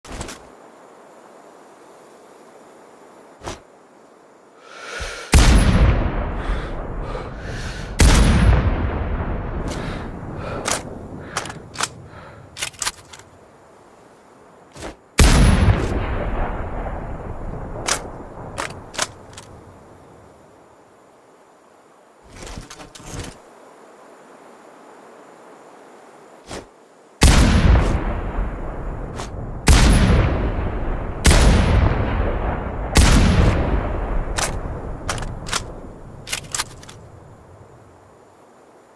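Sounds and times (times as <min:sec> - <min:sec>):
rifle shot with rolling echo: 0:05.3 - 0:06.3, 0:07.9 - 0:09.3, 0:15.2 - 0:19.3, 0:27.2 - 0:28.8, 0:29.6 - 0:35.9
sharp clicks: 0:10.6 - 0:13.4, 0:17.8 - 0:19.5, 0:34.3 - 0:37.1
rifle shots with echo: 0:29.7 - 0:30.4, 0:31.2 - 0:34.6.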